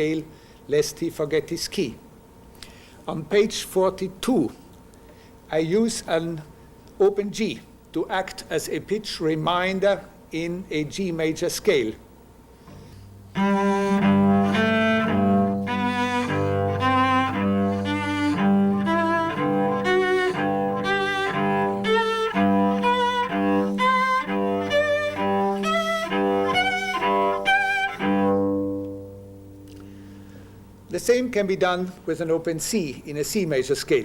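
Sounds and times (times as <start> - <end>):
solo cello playing scale: 12.7 - 30.5.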